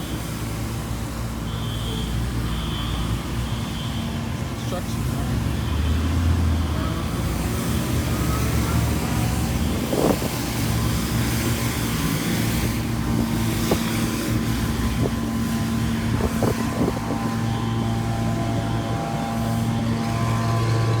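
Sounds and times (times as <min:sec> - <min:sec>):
wind on microphone: 0:09.0 - 0:21.0
low mechanical hum: 0:09.9 - 0:21.0.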